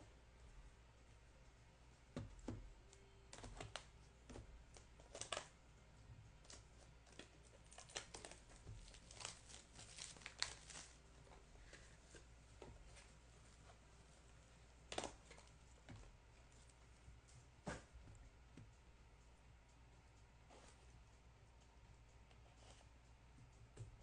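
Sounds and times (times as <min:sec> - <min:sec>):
plastic wrap crinkling and tearing: 0:05.0 - 0:05.5, 0:06.5 - 0:11.0.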